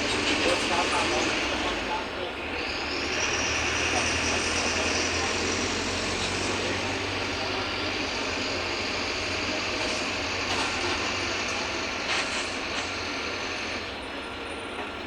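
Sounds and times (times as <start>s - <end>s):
bus diesel engine running: 0.0s - 15.0s
road noise: 0.0s - 15.0s.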